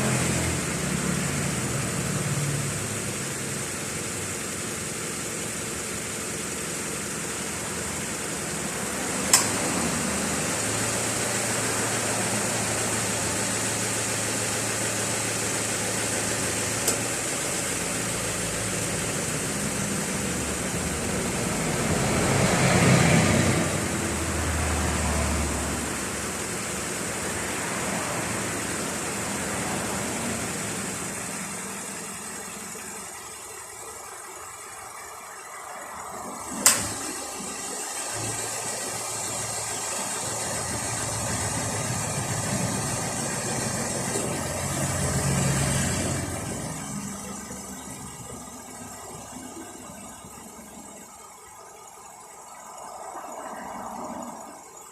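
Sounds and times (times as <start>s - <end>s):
engine running: 0.0s - 54.9s
compressor droning: 5.6s - 54.9s
compressor clutch clicking: 9.2s - 9.7s, 36.5s - 38.0s.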